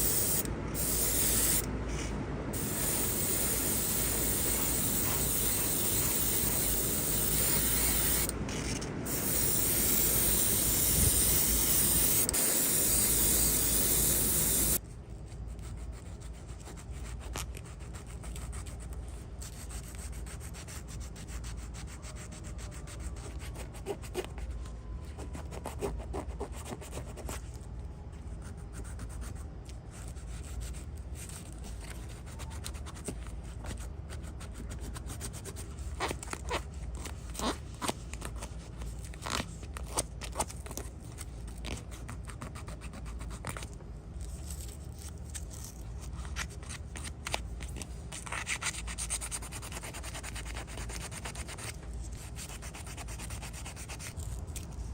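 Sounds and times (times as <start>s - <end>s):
spray hissing: 0.0s - 1.7s, 2.6s - 8.3s, 9.1s - 14.8s
rubbing and sanding strokes: 0.0s - 8.3s, 48.1s - 54.7s.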